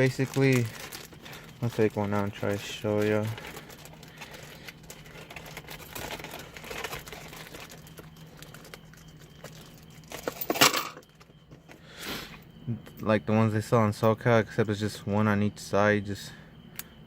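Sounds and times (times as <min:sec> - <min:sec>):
packaging crinkling: 0:00.0 - 0:10.4
packaging rustle: 0:00.0 - 0:11.4
steady low hum: 0:00.0 - 0:17.0.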